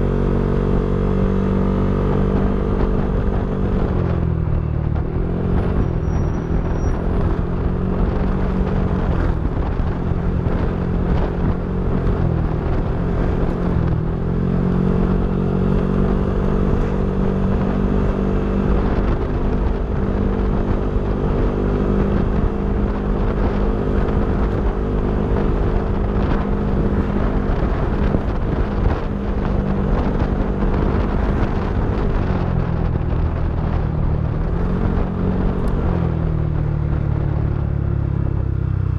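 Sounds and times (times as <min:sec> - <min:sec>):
scooter engine running: 0:00.0 - 0:38.9.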